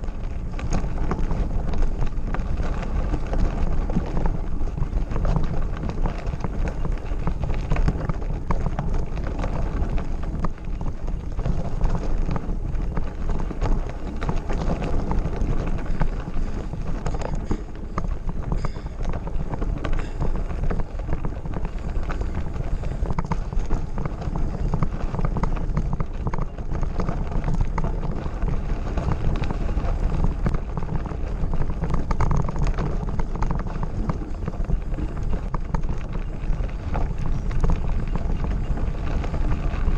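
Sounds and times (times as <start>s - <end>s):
bike frame rattling: 0.0s - 39.9s
tyres crunching on gravel: 0.0s - 39.9s
wind buffeting microphone: 0.0s - 39.9s.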